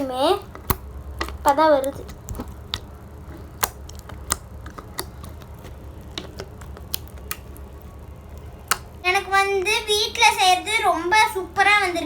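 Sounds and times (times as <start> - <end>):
slime clicking and popping: 0.0 - 9.0.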